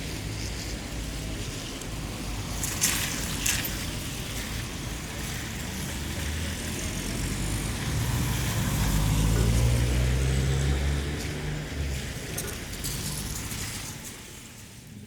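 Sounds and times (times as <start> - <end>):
tyres hissing on wet road: 0.0 - 15.0
vehicle engine approaching: 5.7 - 13.9.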